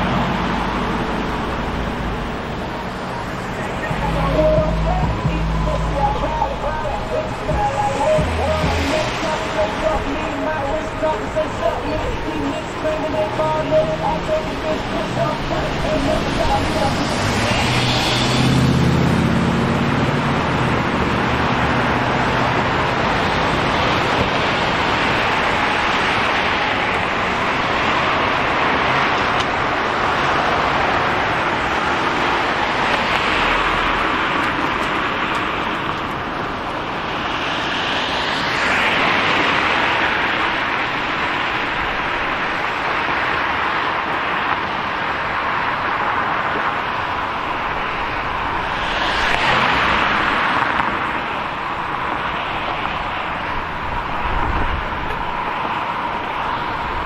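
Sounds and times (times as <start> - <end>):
low engine hum: 0.0 - 24.4
vehicle passing by: 0.0 - 35.7, 46.0 - 55.4
cars passing: 0.0 - 57.0.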